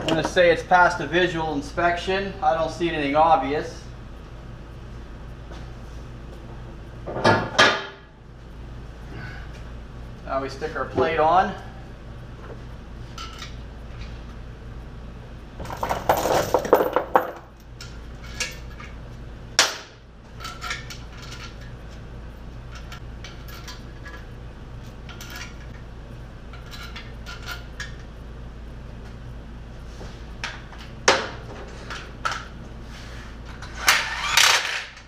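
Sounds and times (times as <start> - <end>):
steady low hum: 0.0 - 35.0
metal plate and bolts clinking: 15.6 - 17.4.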